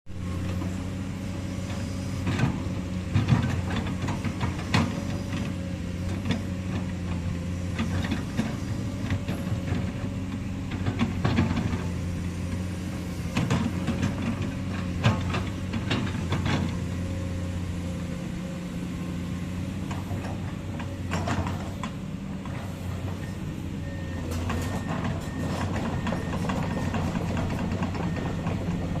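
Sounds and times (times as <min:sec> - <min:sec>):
excavator diesel engine running: 0:00.1 - 0:29.0
clanks and knocks of digging: 0:13.2 - 0:16.9, 0:19.8 - 0:23.4, 0:24.1 - 0:29.0.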